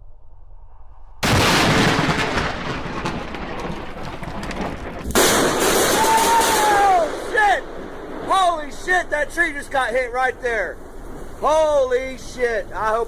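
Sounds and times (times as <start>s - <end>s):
thunder crack: 1.2s - 13.0s
man shouting: 5.9s - 7.6s.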